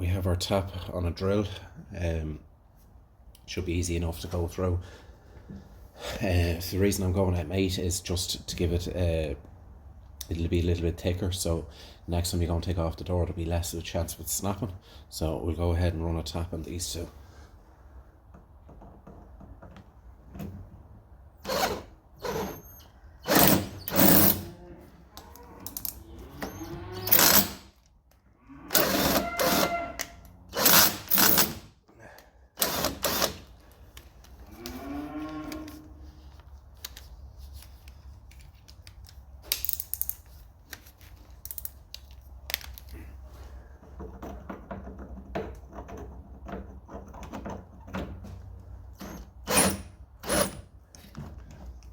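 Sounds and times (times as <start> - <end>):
power drill running: 23.3 - 24.4.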